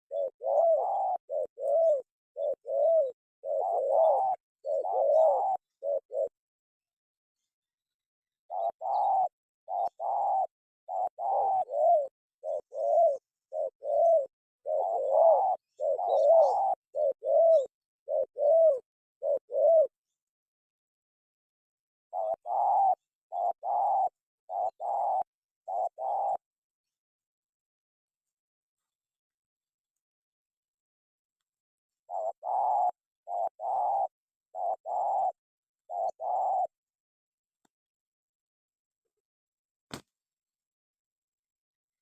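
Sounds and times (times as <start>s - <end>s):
dove cooing: 0.1s - 6.4s, 8.5s - 20.1s, 22.1s - 26.4s, 32.0s - 36.9s.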